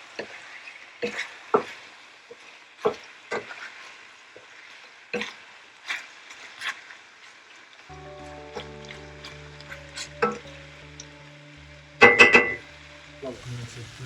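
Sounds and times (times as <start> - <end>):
chicken sizzling in hot oil: 0.0 - 4.4, 12.0 - 14.0.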